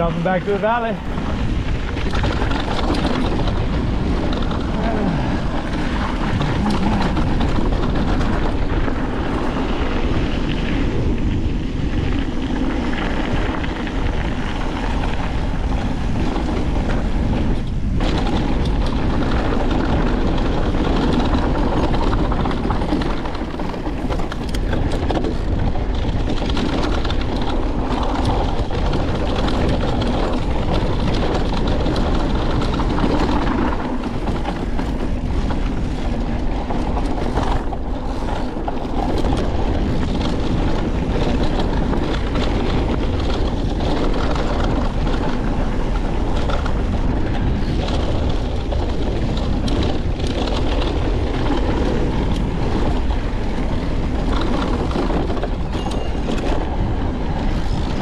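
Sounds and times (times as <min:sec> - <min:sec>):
bike rattling: 0:00.0 - 0:58.0
tyres rumbling over dirt trail: 0:00.0 - 0:58.0
wind noise: 0:00.0 - 0:58.0.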